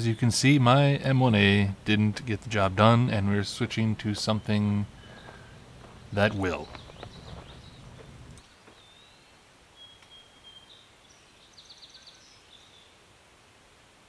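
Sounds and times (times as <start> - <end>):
high bird trill: 3.4 - 9.2
faint bird calls: 3.5 - 12.9.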